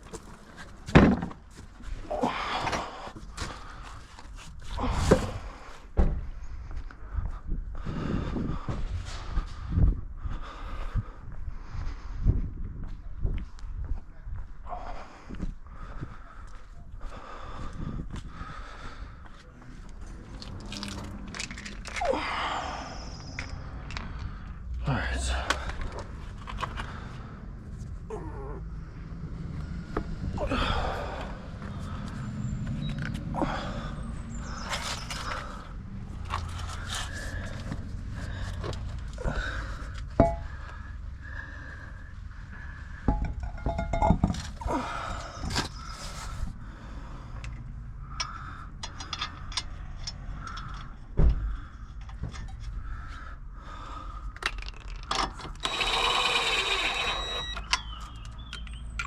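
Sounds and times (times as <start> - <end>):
tools clanking on metal car parts: 39.8 - 40.6, 43.0 - 46.2, 48.1 - 51.0, 51.9 - 52.8.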